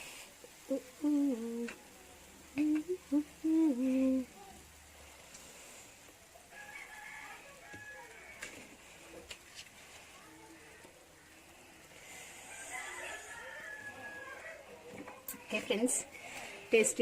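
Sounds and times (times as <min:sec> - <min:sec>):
person humming a tune: 0:00.6 - 0:01.9, 0:02.5 - 0:04.4.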